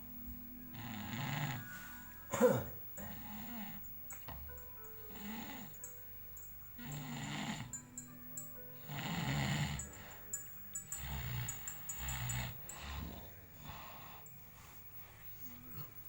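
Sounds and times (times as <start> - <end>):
person snoring: 0.7 - 3.9, 5.0 - 5.9, 6.8 - 7.8, 8.8 - 16.0.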